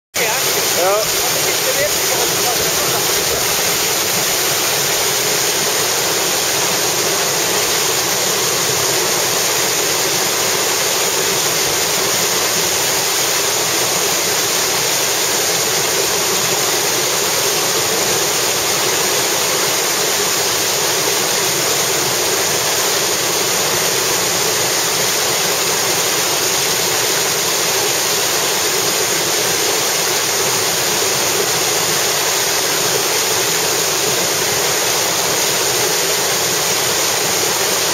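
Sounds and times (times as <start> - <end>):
waterfall rushing: 0.1 - 37.9.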